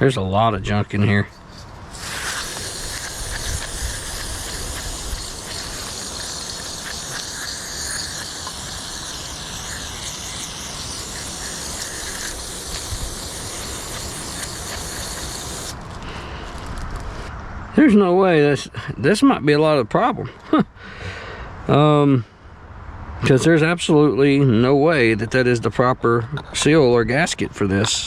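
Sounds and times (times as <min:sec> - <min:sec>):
aerosol spray hissing: 0:01.4 - 0:15.8.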